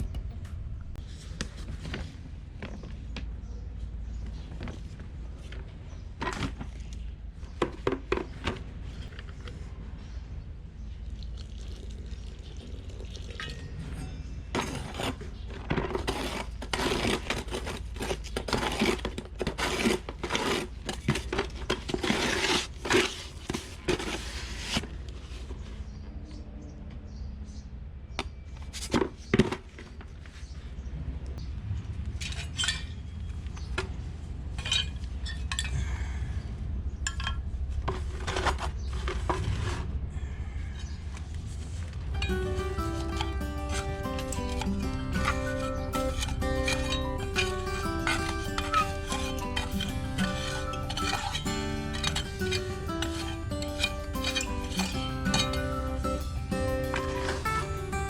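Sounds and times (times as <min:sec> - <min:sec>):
steady low hum: 0:00.0 - 0:04.2
trowel scraping concrete: 0:14.6 - 0:25.0, 0:42.2 - 0:58.0.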